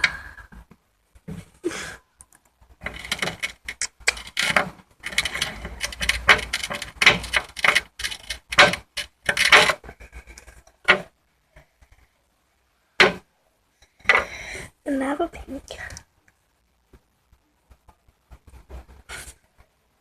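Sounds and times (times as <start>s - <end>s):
small hard objects clicking: 2.2s - 11.1s.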